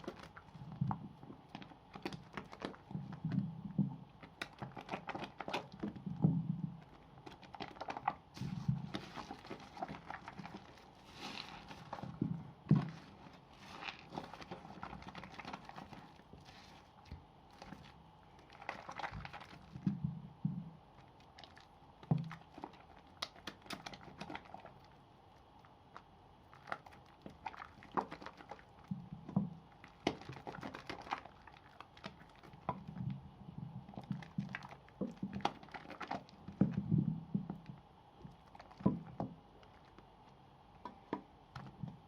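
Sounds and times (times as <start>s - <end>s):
wet soap lather squishing: 0.0s - 42.0s.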